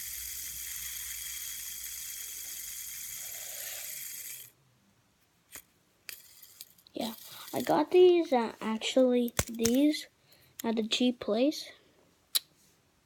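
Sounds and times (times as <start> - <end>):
fidget spinner whirring: 0.0 - 4.6, 5.5 - 8.4.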